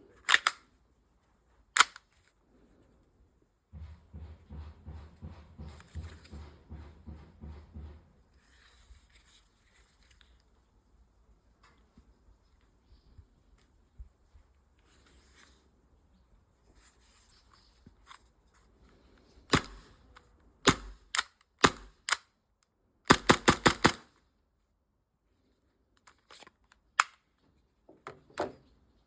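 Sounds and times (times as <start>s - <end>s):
pistol handling clicks: 0.2s - 0.6s, 1.8s - 2.2s, 20.7s - 22.3s
airsoft pistol firing: 19.5s - 20.0s, 20.7s - 22.2s, 23.1s - 24.1s.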